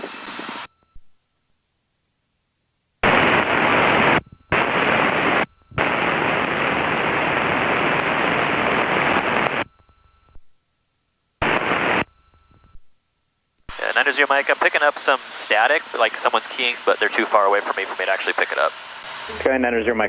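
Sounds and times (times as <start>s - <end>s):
radio static hiss bursts: 0.0s - 0.7s, 3.0s - 10.4s, 11.4s - 12.8s, 13.7s - 20.0s.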